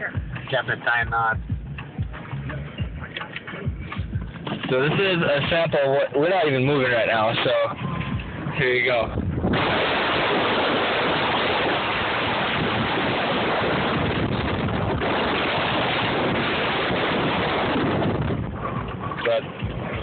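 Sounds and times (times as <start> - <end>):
wind gusts hitting microphone: 0.0 - 20.0
blizzard wind blowing hard: 7.8 - 20.0.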